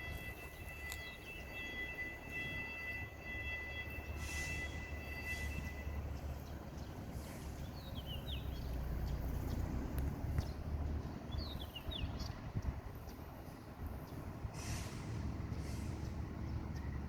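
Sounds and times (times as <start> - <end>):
small bird chirping: 6.2 - 9.7.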